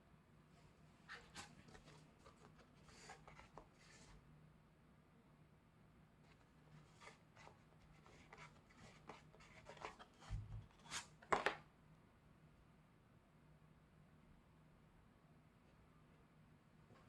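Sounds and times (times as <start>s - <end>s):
hands rubbing paper packaging: 1.1s - 4.2s, 6.8s - 11.3s.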